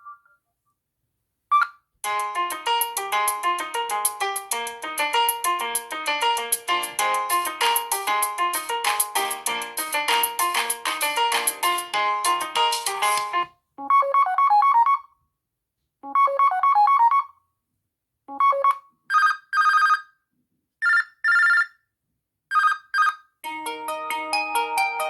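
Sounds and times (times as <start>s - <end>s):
melodic ringtone: 2.0s - 15.0s, 16.1s - 17.3s, 22.5s - 25.0s.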